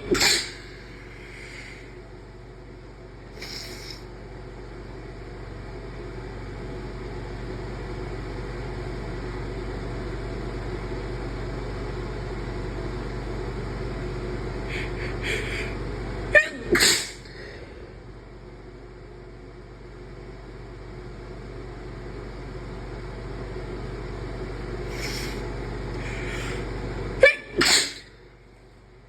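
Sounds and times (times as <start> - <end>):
person sneezing: 0.0 - 0.8, 3.4 - 4.0, 16.4 - 17.6, 27.2 - 28.1
steady background hum: 0.0 - 29.0
catching breaths: 0.2 - 2.0, 14.6 - 15.8, 24.9 - 26.7.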